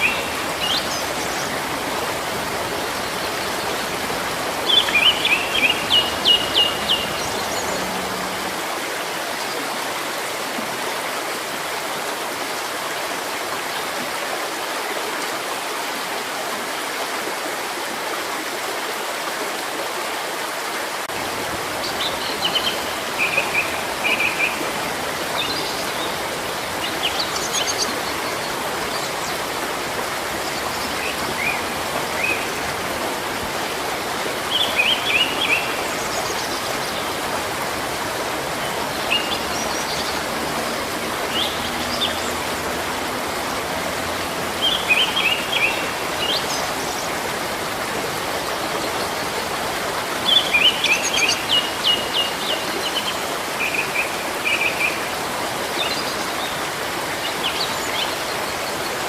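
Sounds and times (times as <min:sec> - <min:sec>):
birds chirping: 0:00.0 - 0:08.8
stream flowing: 0:00.0 - 0:59.0.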